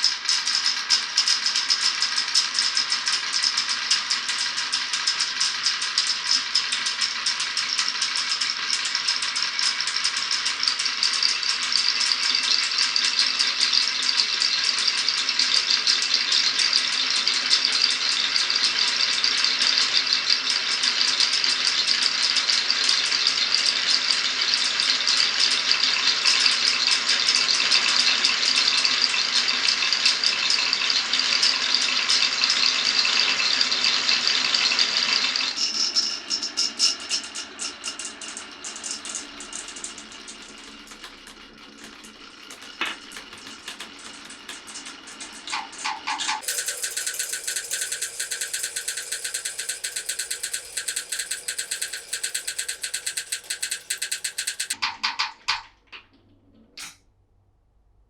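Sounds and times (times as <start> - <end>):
marbles rattling down wooden run: 38.4 - 54.8.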